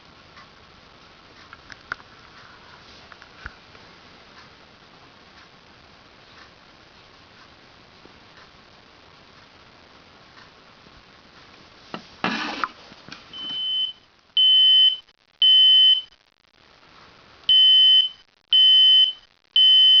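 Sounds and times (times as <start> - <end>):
smoke detector shrill beeps: 17.5 - 20.0.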